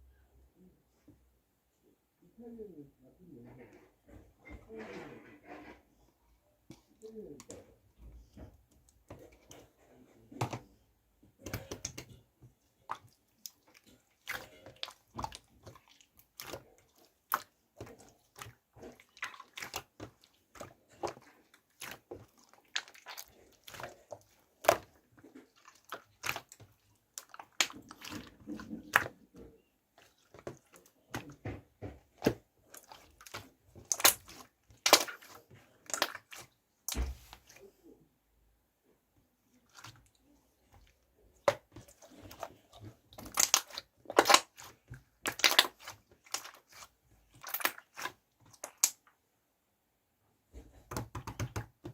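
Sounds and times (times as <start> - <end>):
slime squelching and popping: 6.6 - 37.7, 39.5 - 49.2.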